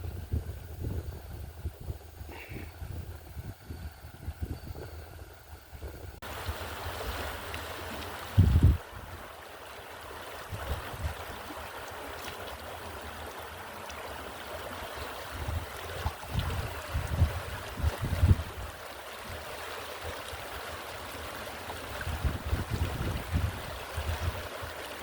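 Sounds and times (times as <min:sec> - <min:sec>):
wind buffeting microphone: 0:00.0 - 0:06.2, 0:08.3 - 0:09.1, 0:15.3 - 0:18.8, 0:22.0 - 0:24.5
stream water running: 0:00.0 - 0:25.0.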